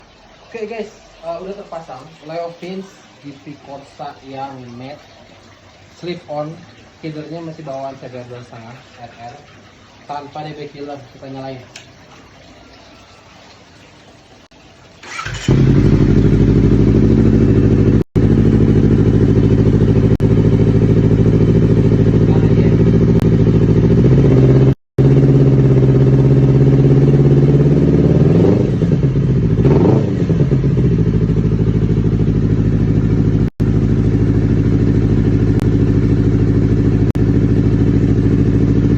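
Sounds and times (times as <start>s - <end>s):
motorcycle engine idling and revving: 15.0s - 38.9s.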